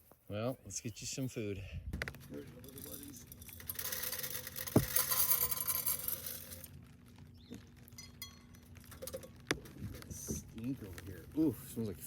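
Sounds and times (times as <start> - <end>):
dry feed pouring rattle: 2.9 - 6.8.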